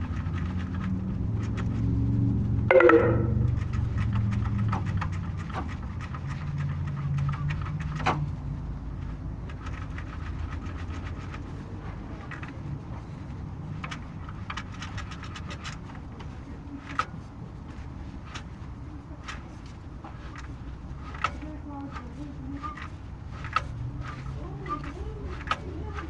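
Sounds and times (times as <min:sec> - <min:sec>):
car engine humming: 0:00.0 - 0:09.4
compressor clutch knocking: 0:00.0 - 0:26.0.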